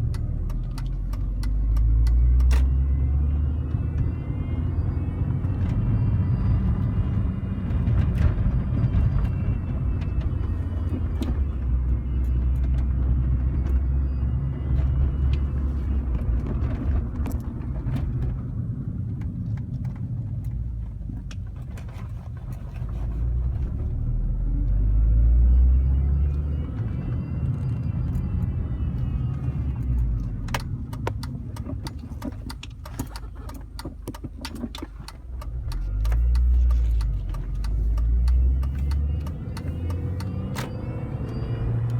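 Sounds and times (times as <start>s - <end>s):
car engine and road rumble: 0.0s - 41.9s
sharp clicks: 30.3s - 40.8s.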